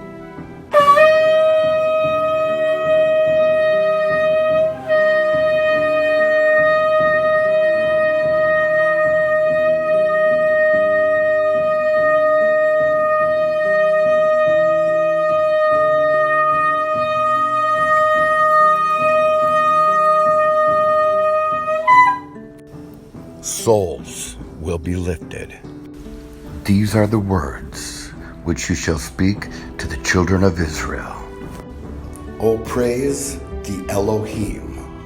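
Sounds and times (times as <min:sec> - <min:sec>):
background music low pattern: 0:00.0 - 0:35.0
shofar long note: 0:00.7 - 0:22.5.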